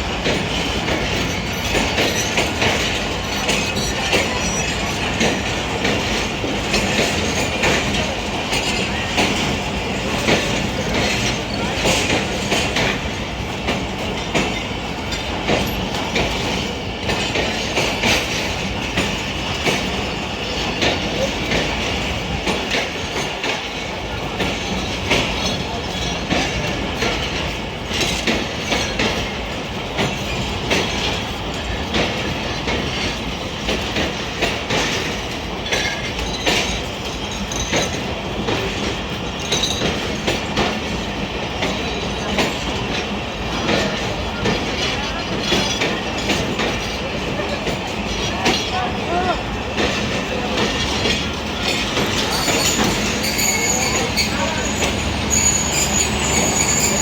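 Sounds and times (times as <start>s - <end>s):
train wheels clacking: 0.0s - 57.0s
wheel squeal: 1.2s - 5.1s, 51.6s - 57.0s.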